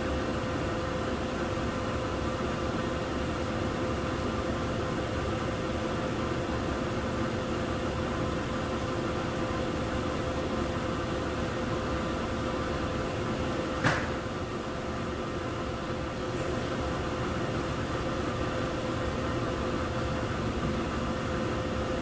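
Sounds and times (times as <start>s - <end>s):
sharp knock: 13.8s - 14.2s.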